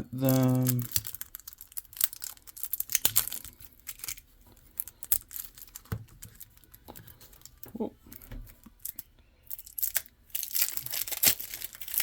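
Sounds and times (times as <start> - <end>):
plastic wrapping crinkling: 0.0 - 12.0.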